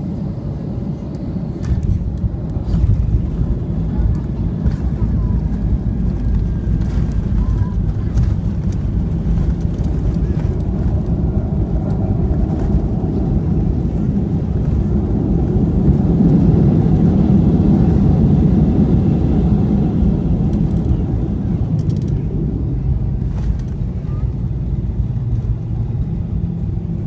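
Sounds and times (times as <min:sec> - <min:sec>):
jet airliner rumble: 0:00.0 - 0:27.0.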